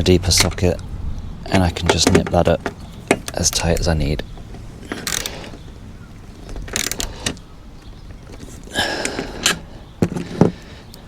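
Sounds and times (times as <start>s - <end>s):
spanner clinking and scraping on nut: 1.8s - 5.7s, 6.4s - 7.4s
sharp ratchet clicks: 4.9s - 5.6s.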